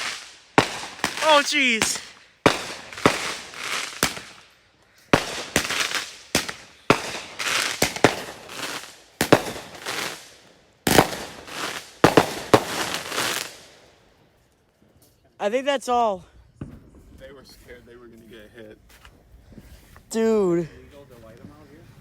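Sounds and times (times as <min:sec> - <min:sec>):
fireworks bangs with crackle: 0:00.0 - 0:13.8.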